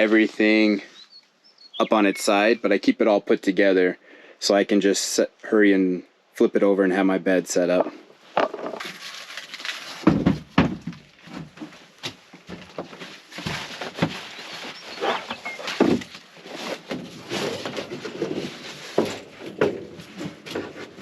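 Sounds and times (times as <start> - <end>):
knocks and thumps: 7.8 - 8.8, 10.0 - 14.3, 15.6 - 16.2, 16.8 - 21.0.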